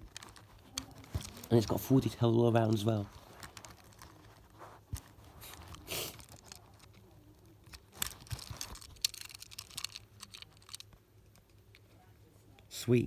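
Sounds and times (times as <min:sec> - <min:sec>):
packaging rustle: 0:00.0 - 0:11.8
small handling clicks: 0:02.6 - 0:11.9.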